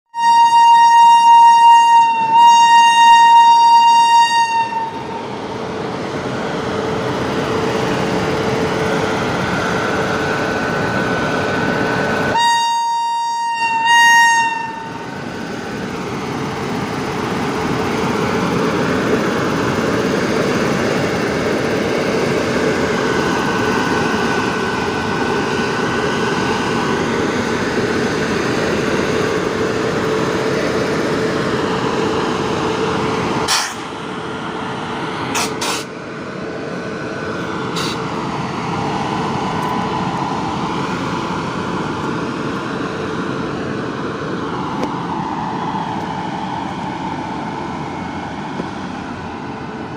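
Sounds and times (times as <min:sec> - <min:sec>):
high-tone locomotive horn: 0:00.1 - 0:05.2, 0:12.3 - 0:15.1
train rumbling: 0:00.2 - 0:49.9.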